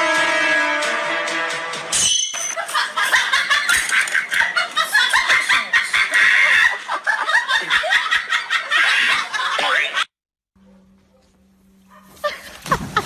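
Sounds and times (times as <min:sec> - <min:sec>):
bursts of laughter: 0:02.6 - 0:10.1.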